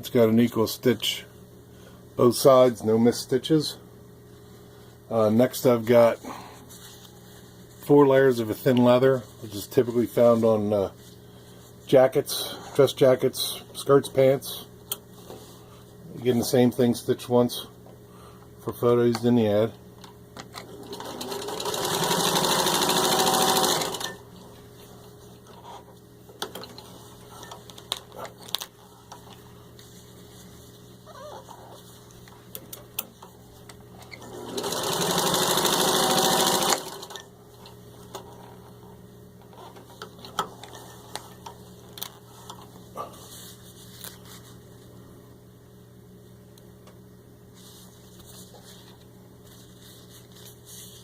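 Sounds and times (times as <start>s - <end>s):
sewing machine stitching: 20.7s - 24.2s, 34.2s - 37.2s.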